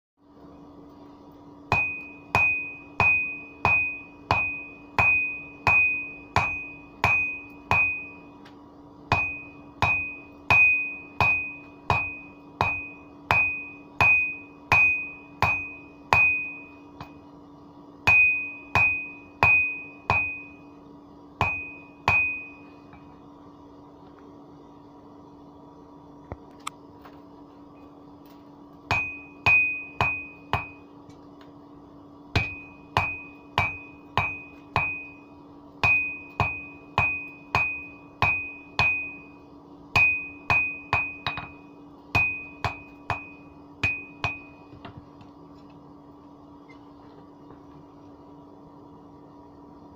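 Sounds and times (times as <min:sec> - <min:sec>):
steady low hum: 0:00.2 - 0:49.9
hammer ringing on anvil: 0:01.7 - 0:08.4, 0:09.1 - 0:17.3, 0:18.0 - 0:20.8, 0:21.4 - 0:23.0, 0:28.9 - 0:31.0, 0:32.3 - 0:44.8.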